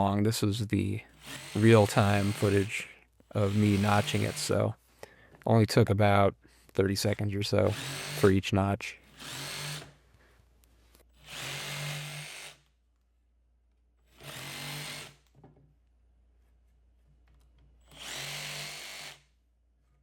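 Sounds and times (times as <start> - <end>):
power tool working wood: 1.2 - 2.7, 3.4 - 4.5, 7.6 - 8.3.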